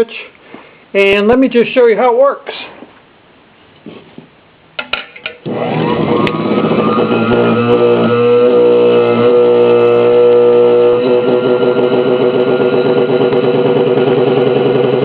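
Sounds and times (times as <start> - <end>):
mixer motor whining: 5.4 - 15.0.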